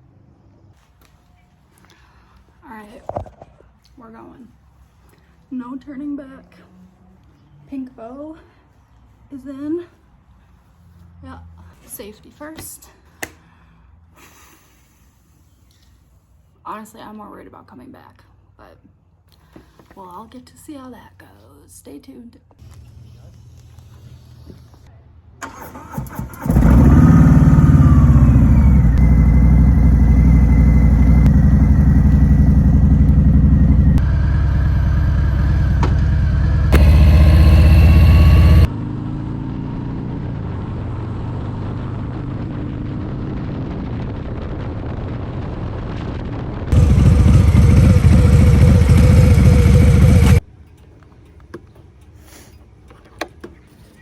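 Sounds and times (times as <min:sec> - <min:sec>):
motorcycle engine starting and revving: 0:25.4 - 0:43.8, 0:46.7 - 0:50.5.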